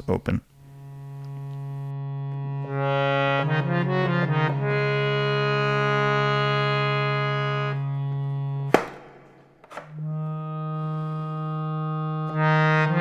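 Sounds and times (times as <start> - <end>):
harmonium drone: 0.8 - 8.7, 10.1 - 13.0
harmonium notes and chord: 1.8 - 8.8, 10.2 - 13.0.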